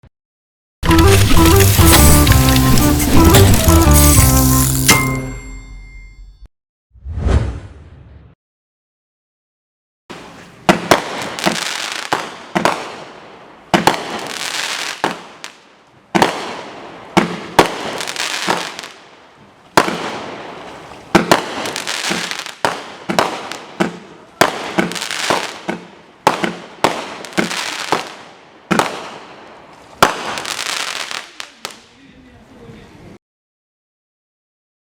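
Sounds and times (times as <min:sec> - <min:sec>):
firework crackle: 0:00.9 - 0:04.9, 0:10.1 - 0:13.0, 0:13.8 - 0:15.6, 0:17.5 - 0:19.0, 0:21.3 - 0:23.7, 0:24.4 - 0:28.2, 0:30.0 - 0:31.9
firework bangs: 0:01.6 - 0:05.0, 0:10.1 - 0:19.0, 0:19.7 - 0:29.4, 0:30.0 - 0:31.8.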